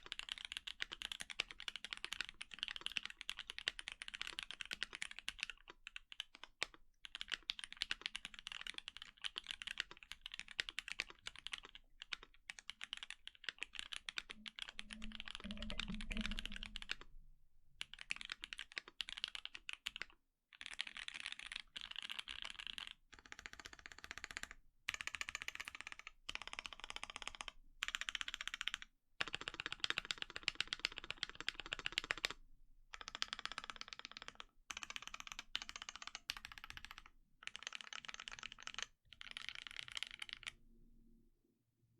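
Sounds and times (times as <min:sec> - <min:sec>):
mechanical keyboard typing: 0:00.0 - 0:17.1, 0:17.8 - 0:32.4, 0:33.0 - 0:40.6.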